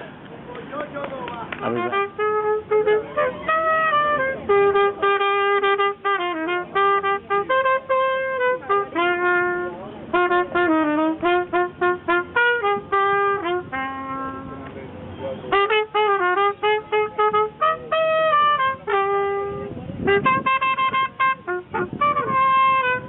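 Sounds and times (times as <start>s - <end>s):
trumpet playing lively melody: 1.6s - 14.7s, 15.5s - 23.0s.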